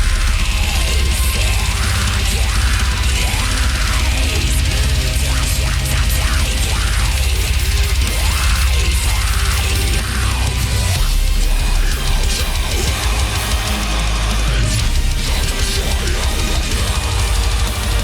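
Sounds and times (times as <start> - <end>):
fast drumming: 0.0 - 18.0
heavy distorted guitars: 0.0 - 18.0.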